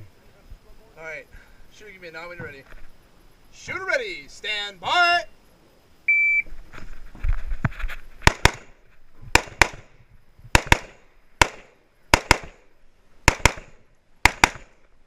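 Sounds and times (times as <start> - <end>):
shot timer beep: 6.1 - 6.5
rifle fire: 8.2 - 9.9, 10.5 - 14.8.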